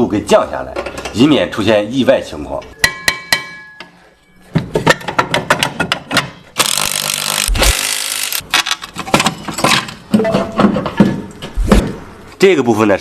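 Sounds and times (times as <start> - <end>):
metal tools clicking and knocking: 4.6 - 6.8.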